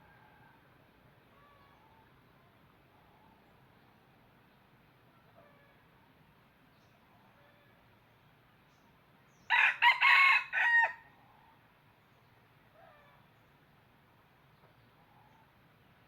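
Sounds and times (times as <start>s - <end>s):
faint bird call: 1.3s - 2.2s
rooster crowing: 9.5s - 11.1s.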